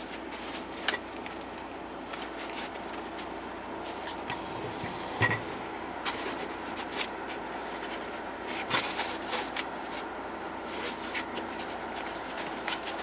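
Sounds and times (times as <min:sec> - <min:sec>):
faint steady hum: 0:00.0 - 0:13.0
hands clicking and rustling packaging: 0:10.8 - 0:13.0.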